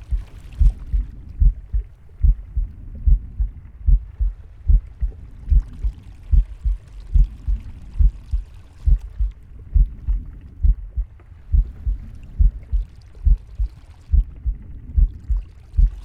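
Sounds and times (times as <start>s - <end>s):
heartbeat thumping: 0.0s - 16.0s.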